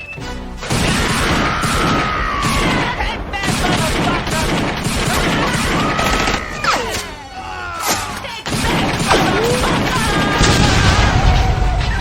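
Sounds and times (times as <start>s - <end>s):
gliding whistle-like tones: 0.0s - 0.5s
rapid gunfire: 0.6s - 7.2s, 8.4s - 12.0s.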